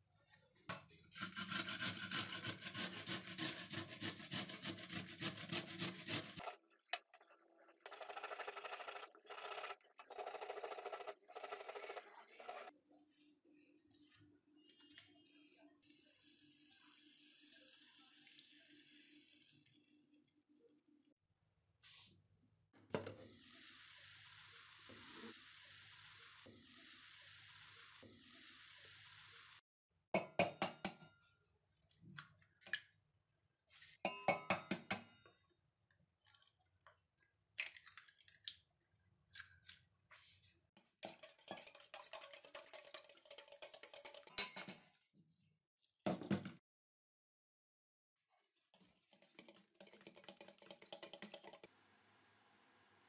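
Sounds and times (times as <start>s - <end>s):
utensils clinking against dishes: 41.0s - 44.9s.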